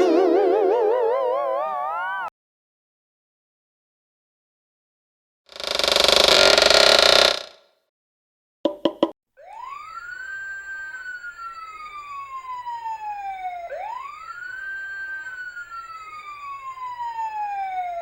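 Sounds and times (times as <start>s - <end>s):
emergency siren wailing: 0.0s - 2.3s, 9.4s - 18.0s.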